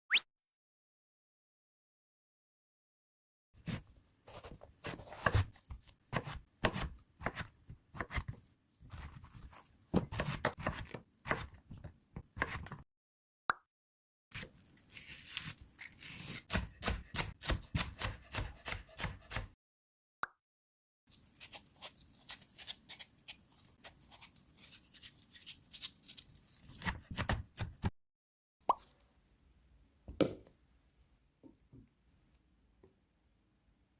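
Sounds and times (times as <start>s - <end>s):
knife chopping on cutting board: 3.6s - 9.2s, 9.9s - 12.8s, 16.4s - 19.6s.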